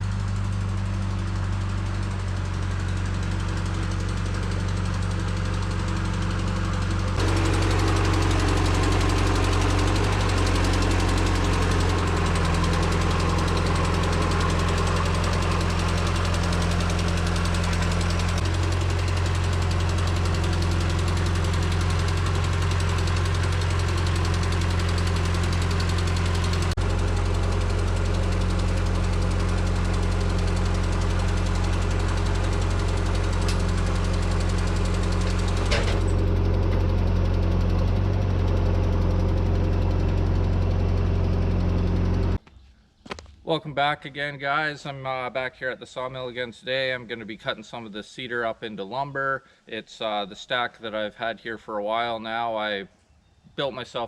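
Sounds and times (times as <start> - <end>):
engine running: 0.0 - 42.4.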